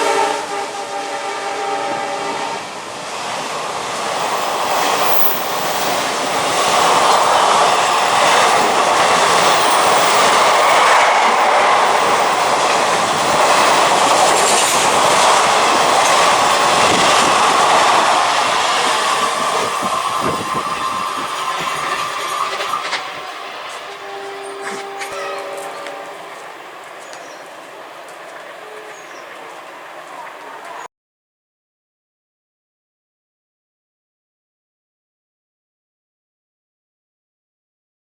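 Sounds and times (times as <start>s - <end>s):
train horn blast: 0.0s - 2.8s, 21.6s - 26.7s
train passing at speed: 0.0s - 30.9s
wheels clattering over rail joints: 4.0s - 30.8s.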